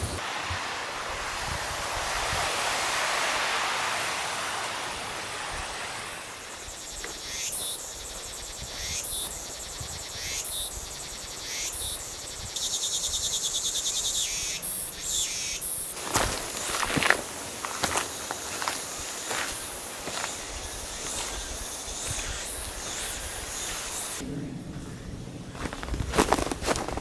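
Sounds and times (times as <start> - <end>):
wind noise: 0.0 - 7.0, 8.0 - 13.3, 16.0 - 27.0.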